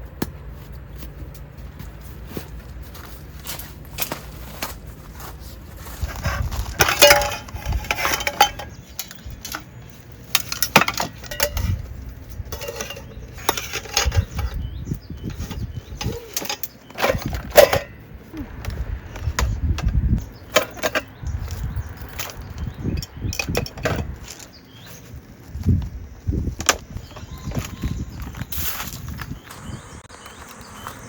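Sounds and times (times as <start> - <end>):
camping gear clinking and rustling: 0.4 - 29.5.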